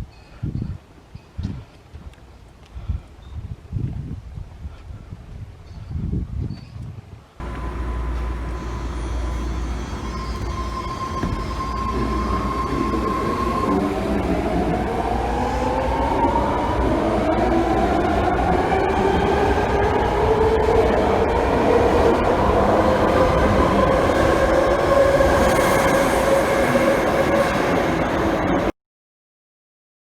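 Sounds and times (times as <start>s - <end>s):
steady rumble: 7.4s - 15.9s
whine rising in pitch: 7.4s - 28.7s.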